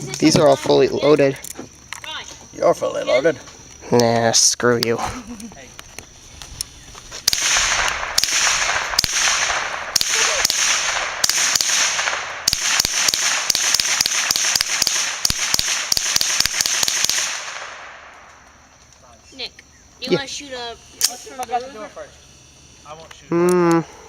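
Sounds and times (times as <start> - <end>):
small-calibre gunshots: 7.2 - 18.6.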